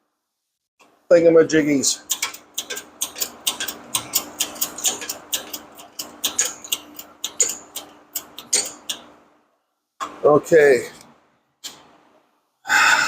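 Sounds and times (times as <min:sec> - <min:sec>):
sharp metallic clicks: 0:02.0 - 0:09.2.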